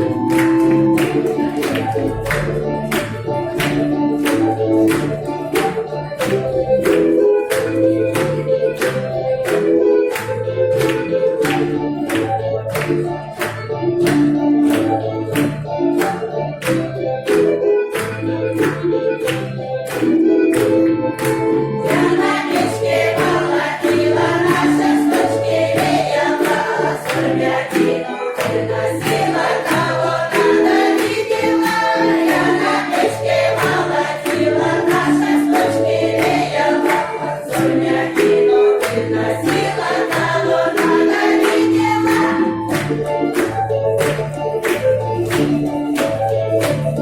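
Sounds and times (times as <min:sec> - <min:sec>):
women singing in chorus: 0:21.9 - 0:42.5.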